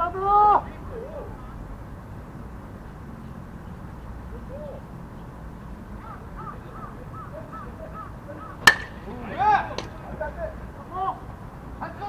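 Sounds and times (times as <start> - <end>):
outdoor background noise: 0.0 - 12.0
metal bat hitting a baseball: 8.6 - 10.0.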